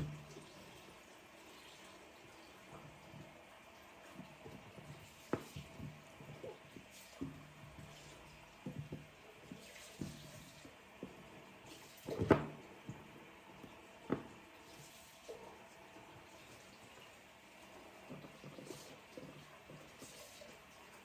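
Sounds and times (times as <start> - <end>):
tap water splashing: 0.0 - 21.0.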